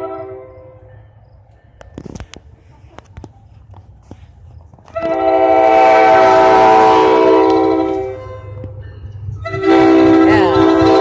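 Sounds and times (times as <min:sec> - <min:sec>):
train horn blast: 0:00.0 - 0:00.9, 0:04.9 - 0:08.7, 0:09.3 - 0:11.0.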